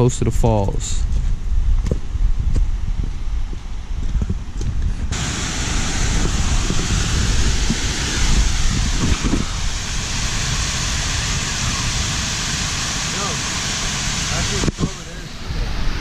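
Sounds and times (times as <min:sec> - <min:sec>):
wind rumbling on microphone: 0:00.0 - 0:16.0
waterfall rushing: 0:05.1 - 0:16.0.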